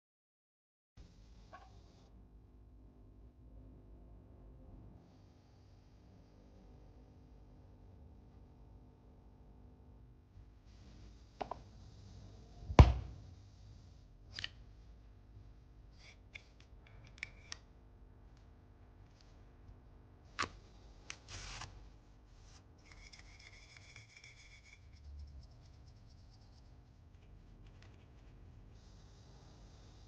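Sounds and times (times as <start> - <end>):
light scraping and rubbing: 21.2 - 28.8.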